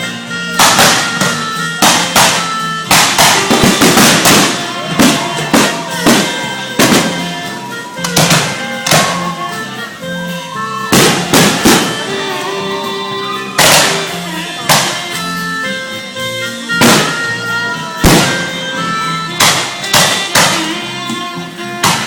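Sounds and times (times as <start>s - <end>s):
music playing: 0.0s - 22.0s
fireworks banging: 0.6s - 9.4s, 10.9s - 12.5s, 13.6s - 15.4s, 16.7s - 20.8s.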